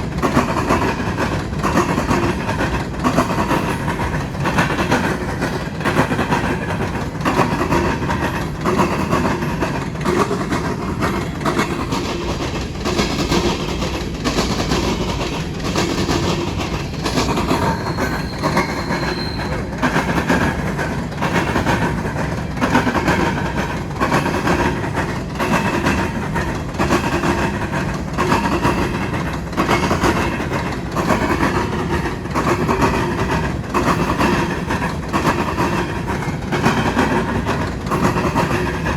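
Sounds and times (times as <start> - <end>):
train rumble: 0.0 - 38.9
train wheels clicking over rail joints: 0.0 - 38.9
wheel squeal: 17.0 - 20.4.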